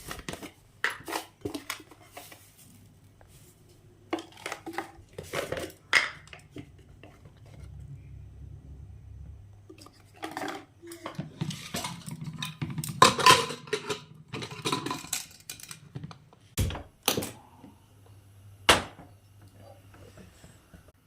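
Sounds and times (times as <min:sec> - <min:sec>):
cookware clattering and scraping: 0:04.1 - 0:07.8, 0:09.7 - 0:16.2.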